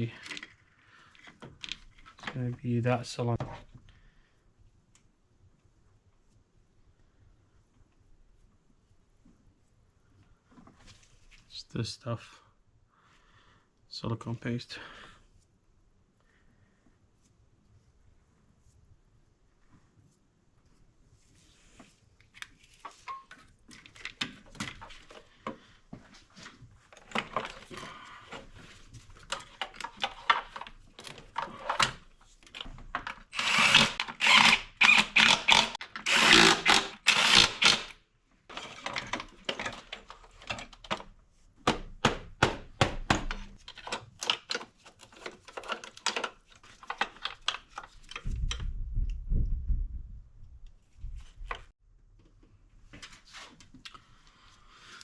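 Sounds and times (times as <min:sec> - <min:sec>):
rustling and scraping: 0:09.2 - 0:11.5, 0:19.5 - 0:33.1, 0:38.5 - 0:41.6, 0:52.8 - 0:53.8
clicks and knocks of tools: 0:43.1 - 0:48.7.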